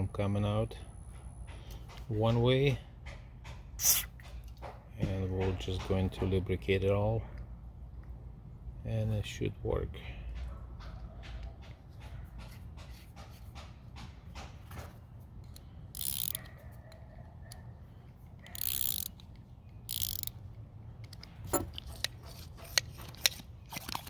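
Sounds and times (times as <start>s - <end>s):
hand air pump clicks and knocks: 1.0s - 6.6s, 10.4s - 17.6s, 18.4s - 20.4s, 21.0s - 24.0s
short hisses: 3.8s - 4.1s.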